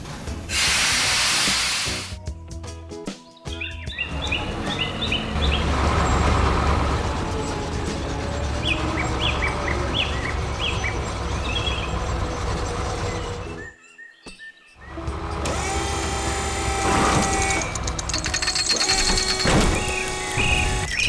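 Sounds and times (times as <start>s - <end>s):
small birds chirping: 3.3s - 15.1s, 18.2s - 21.0s
diesel machinery rumbling: 4.0s - 13.7s, 14.8s - 21.0s.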